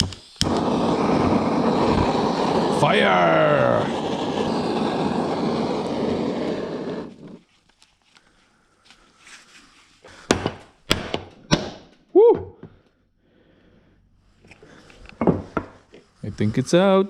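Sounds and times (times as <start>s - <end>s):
blowtorch flame hissing: 0.0s - 7.5s.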